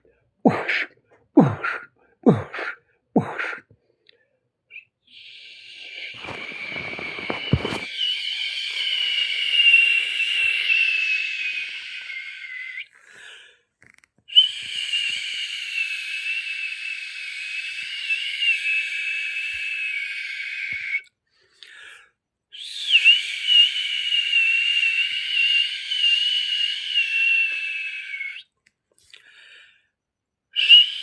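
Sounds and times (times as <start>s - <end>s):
person whistling high notes: 4.7s - 13.0s, 14.3s - 21.1s, 22.6s - 28.5s, 30.6s - 31.0s.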